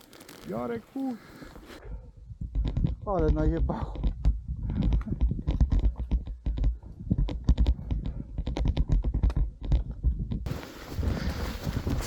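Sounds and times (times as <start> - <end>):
boots crunching through snow: 10.5 - 12.0.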